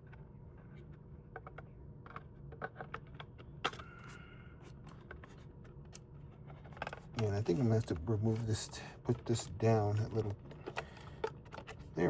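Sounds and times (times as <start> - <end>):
plastic parts clicking and tapping: 10.0 - 11.8.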